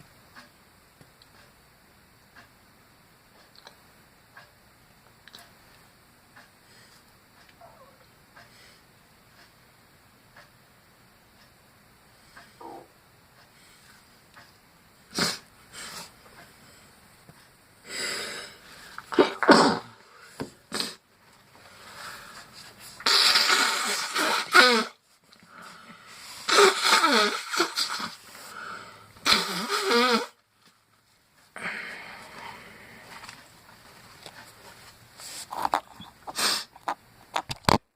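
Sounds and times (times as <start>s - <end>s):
person sneezing: 15.1s - 15.5s, 19.1s - 20.0s, 20.7s - 21.0s, 23.0s - 25.0s, 26.5s - 28.2s, 29.2s - 30.3s, 36.3s - 36.7s.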